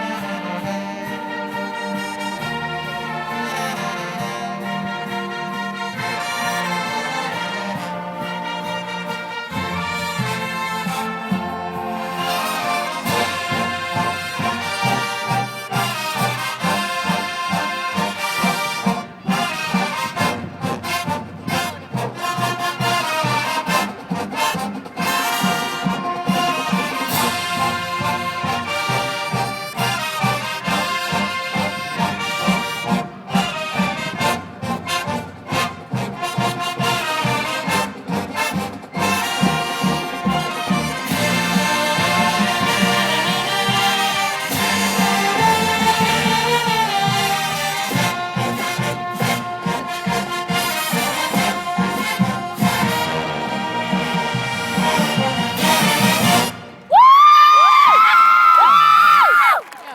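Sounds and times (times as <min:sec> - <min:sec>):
marching drums steady beat: 0:00.0 - 0:56.6
brass: 0:00.0 - 0:57.0.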